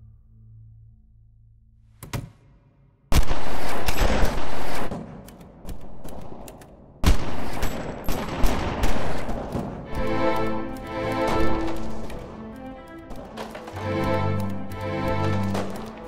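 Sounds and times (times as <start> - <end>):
bursts of rapid sharp cracks: 3.1 - 16.0.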